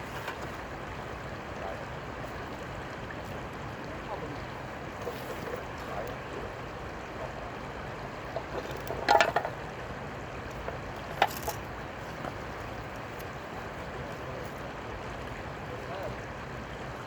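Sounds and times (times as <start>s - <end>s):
water splashing: 0.0s - 16.2s
rushing water: 0.0s - 17.0s.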